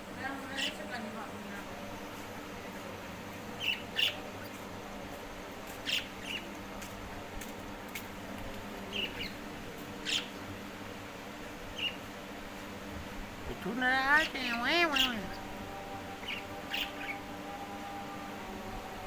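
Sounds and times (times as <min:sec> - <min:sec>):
parrot chirping: 0:00.5 - 0:00.8, 0:03.6 - 0:04.2, 0:10.0 - 0:10.4, 0:11.8 - 0:12.0, 0:14.1 - 0:15.4, 0:16.2 - 0:17.2.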